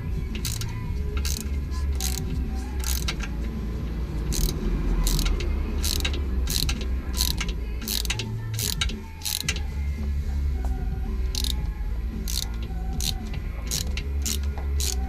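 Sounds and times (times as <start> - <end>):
ratchet wrench clicking: 0.0 - 9.7, 11.3 - 15.0.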